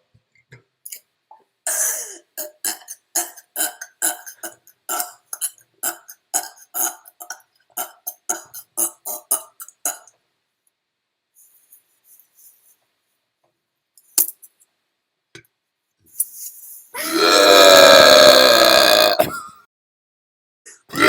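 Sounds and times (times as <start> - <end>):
person burping: 17.0 - 19.6, 20.8 - 21.0.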